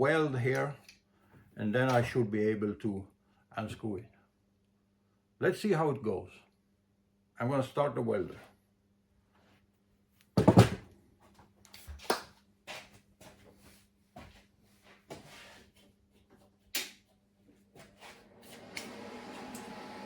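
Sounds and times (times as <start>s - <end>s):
workshop gear knocking and clattering: 10.4s - 10.9s.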